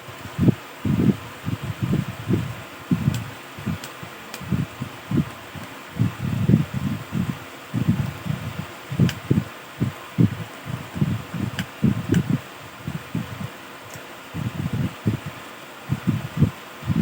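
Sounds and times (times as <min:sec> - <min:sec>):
sharp little clicks: 0:03.1 - 0:04.6.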